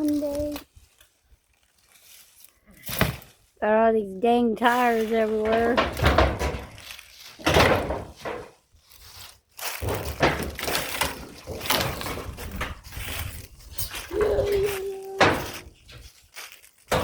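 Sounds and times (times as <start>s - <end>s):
clattering thuds: 5.2s - 8.6s, 9.7s - 14.5s
wooden boards knocked and torn: 5.4s - 8.6s, 9.7s - 13.4s.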